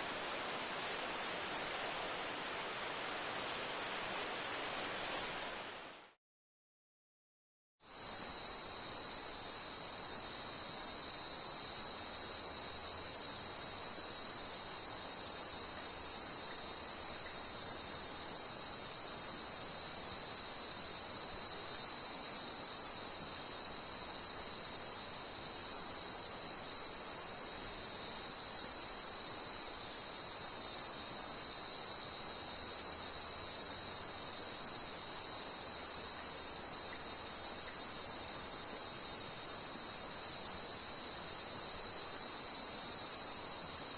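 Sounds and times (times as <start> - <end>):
night insects trilling: 0.0 - 6.0, 7.8 - 43.9.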